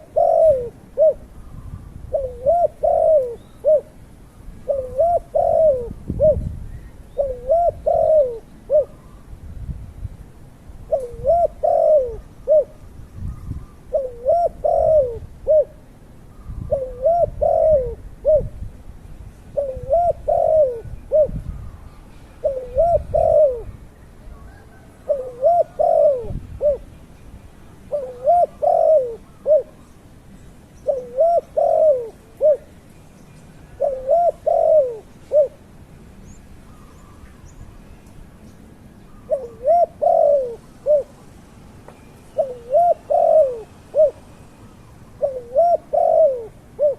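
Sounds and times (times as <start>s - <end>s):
dove cooing: 0.0s - 4.0s, 4.6s - 6.5s, 7.1s - 9.2s, 10.8s - 15.8s, 16.5s - 18.6s, 19.6s - 21.6s, 22.4s - 26.9s, 27.9s - 29.9s, 30.8s - 32.8s, 33.6s - 35.7s, 39.1s - 41.3s, 42.4s - 44.3s, 45.1s - 46.9s.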